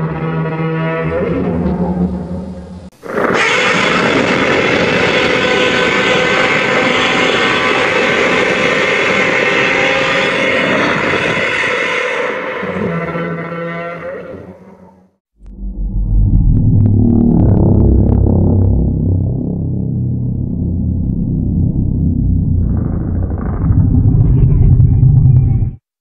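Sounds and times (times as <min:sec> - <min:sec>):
loud harsh monster roar: 0:03.0 - 0:14.4, 0:22.5 - 0:25.8
low deep monster call: 0:12.5 - 0:25.8.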